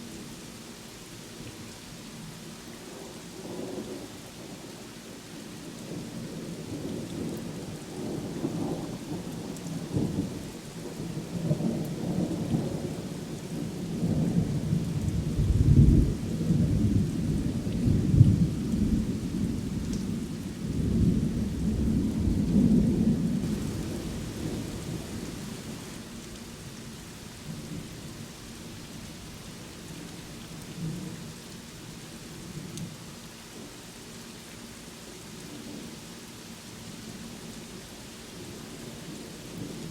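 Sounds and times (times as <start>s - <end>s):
steady rainfall: 0.0s - 39.9s
thunder rumbling: 20.7s - 26.0s.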